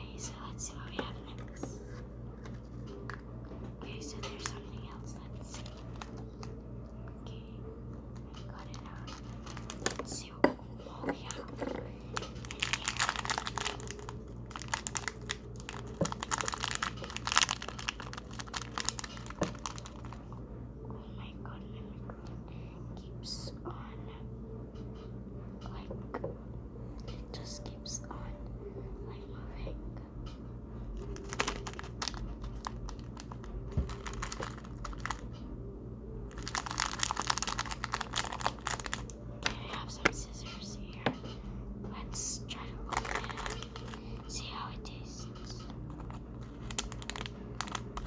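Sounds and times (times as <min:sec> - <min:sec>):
plastic packaging crinkling: 0:04.0 - 0:06.5, 0:08.2 - 0:10.1, 0:12.1 - 0:20.2, 0:31.0 - 0:35.3, 0:36.3 - 0:39.8, 0:42.8 - 0:44.5, 0:45.9 - 0:48.0.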